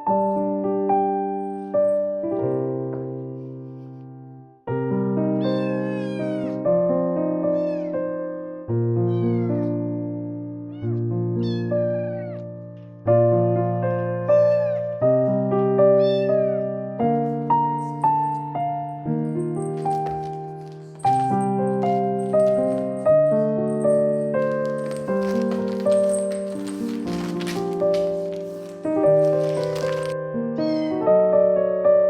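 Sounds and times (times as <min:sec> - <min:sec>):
gentle piano music: 0:00.0 - 0:32.0
kitten mewing: 0:05.4 - 0:06.6, 0:07.5 - 0:08.0, 0:09.1 - 0:09.7, 0:10.7 - 0:12.4, 0:30.6 - 0:31.1.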